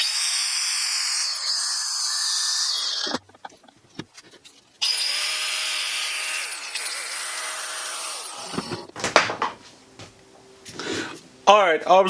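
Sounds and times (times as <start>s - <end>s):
angle grinder whining: 0.0s - 3.2s, 4.8s - 9.4s
sharp clicks and knocks: 8.5s - 10.1s.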